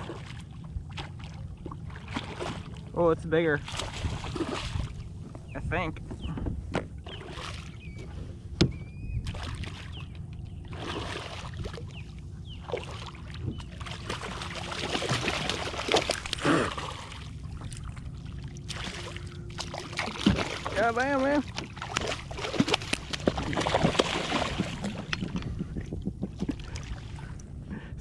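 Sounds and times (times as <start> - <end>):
wind rumble on microphone: 0.0 - 16.4, 17.4 - 28.0
water splashing and sloshing: 0.0 - 27.9
knocks on boat: 20.1 - 20.6.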